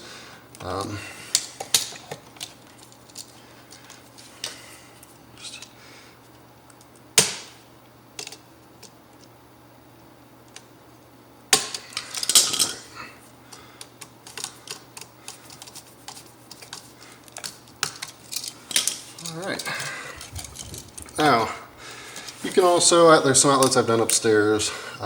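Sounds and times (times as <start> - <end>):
hand tools clicking and clattering: 11.6 - 12.9, 14.0 - 22.8.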